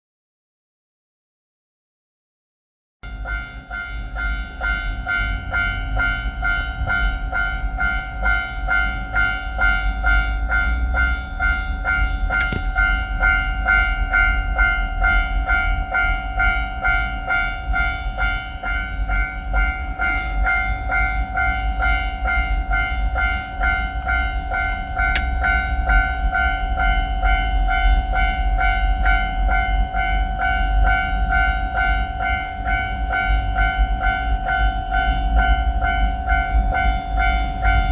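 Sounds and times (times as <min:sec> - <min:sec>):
two-tone level-crossing alarm: 0:03.0 - 0:37.9.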